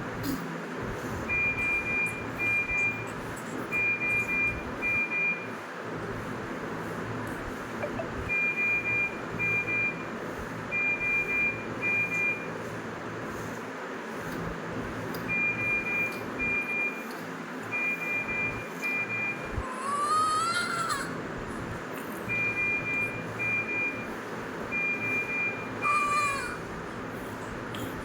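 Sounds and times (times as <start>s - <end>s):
medical equipment alarm beeping: 1.3s - 3.1s, 3.7s - 5.5s, 7.8s - 10.1s, 10.7s - 12.6s, 15.3s - 17.0s, 17.7s - 19.6s, 22.3s - 26.5s.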